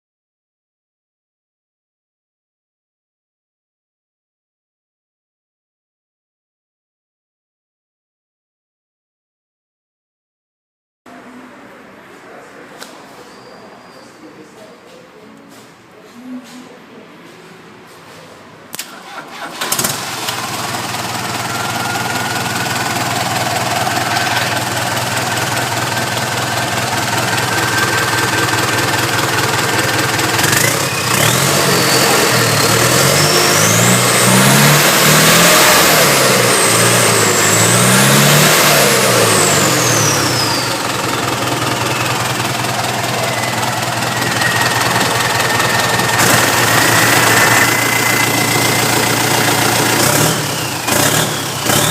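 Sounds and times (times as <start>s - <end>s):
diesel engine cranking and idling: 18.7s - 51.9s
engine revving with high whine: 19.5s - 51.9s.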